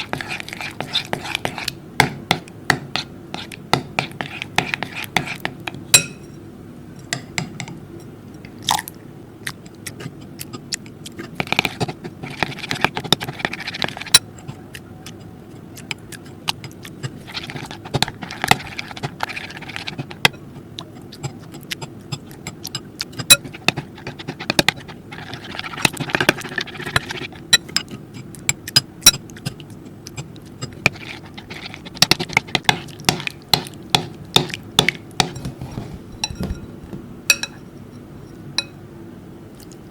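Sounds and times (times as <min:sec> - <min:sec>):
slime squishing: 0:00.0 - 0:01.8, 0:09.4 - 0:35.8
steady low hum: 0:00.0 - 0:39.9.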